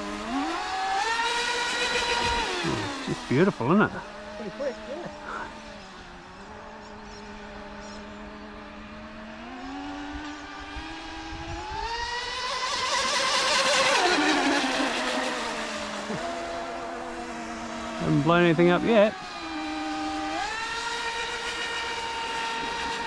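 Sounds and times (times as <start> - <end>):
electric motor whining: 0.0 - 9.0, 10.1 - 23.0
propeller rushing hiss: 13.0 - 18.9.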